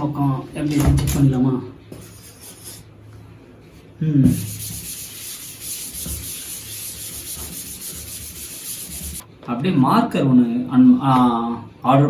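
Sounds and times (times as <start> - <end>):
scratchy rubbing on writing board: 2.0 - 2.9, 4.3 - 9.2.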